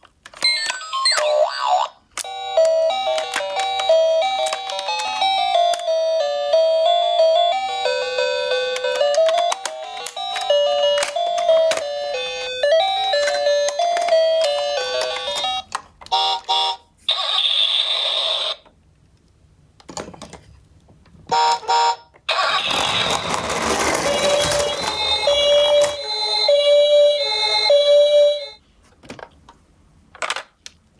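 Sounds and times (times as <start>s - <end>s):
toy chiming melody: 0.4s - 16.8s, 22.4s - 28.6s.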